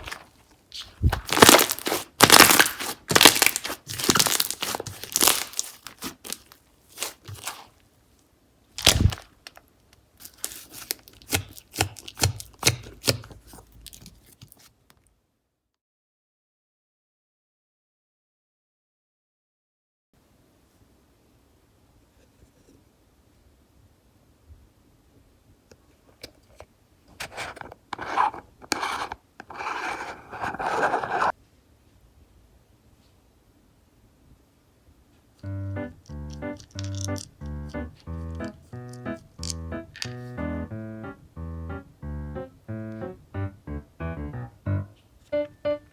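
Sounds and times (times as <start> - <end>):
slime squishing with sticky pops: 0.0 - 7.7, 10.2 - 14.2.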